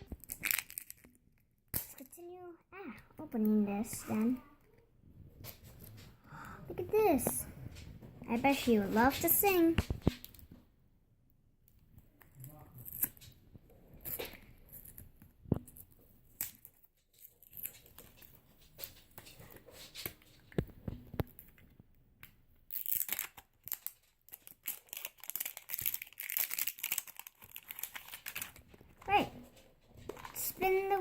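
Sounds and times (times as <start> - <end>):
wrapper tearing and crinkling: 0.0 - 2.1, 22.7 - 29.1
clicks and rustles: 11.7 - 31.0.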